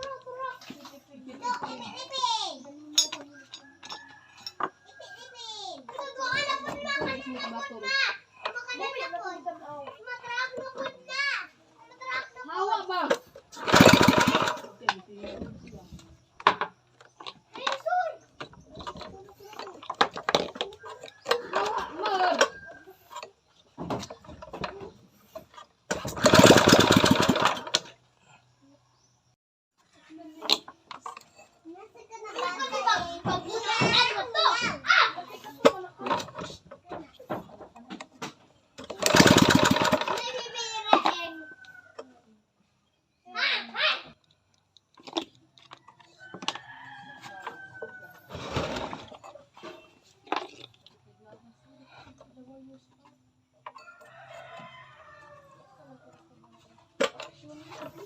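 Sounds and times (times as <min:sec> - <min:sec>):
small petrol engine running: 0:13.1 - 0:16.6, 0:24.3 - 0:28.6, 0:38.8 - 0:40.6.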